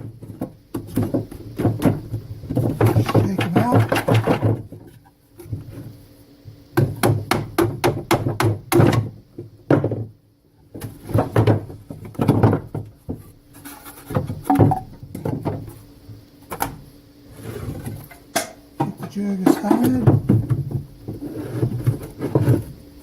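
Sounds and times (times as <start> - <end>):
wooden frames knocking: 0.0 - 5.0, 6.8 - 13.3, 14.1 - 15.7, 18.4 - 22.6.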